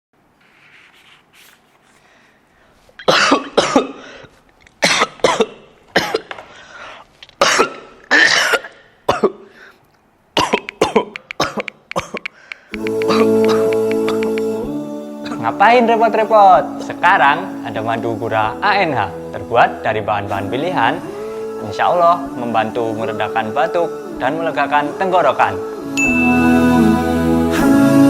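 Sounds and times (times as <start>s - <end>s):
person coughing: 3.0s - 6.4s, 7.4s - 9.5s, 10.4s - 12.4s, 13.1s - 14.3s.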